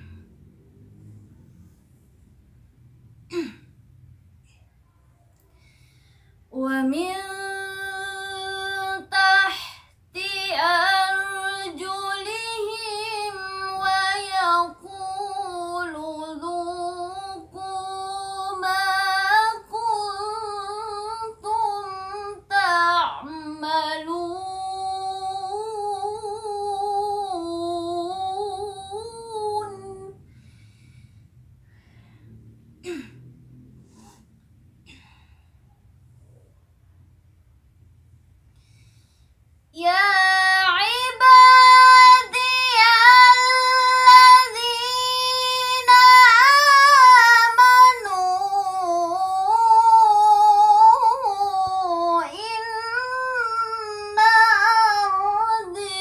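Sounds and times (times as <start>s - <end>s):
child chanting melodically: 10.2s - 30.2s, 39.8s - 56.0s.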